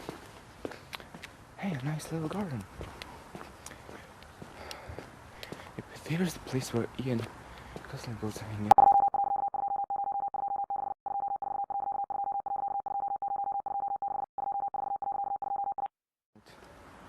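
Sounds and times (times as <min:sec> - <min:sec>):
stuttering electronic beep tone: 0:08.7 - 0:15.9.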